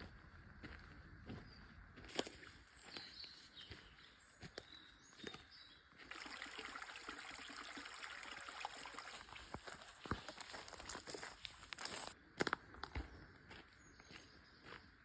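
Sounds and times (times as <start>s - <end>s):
faint water trickling: 5.9s - 12.2s.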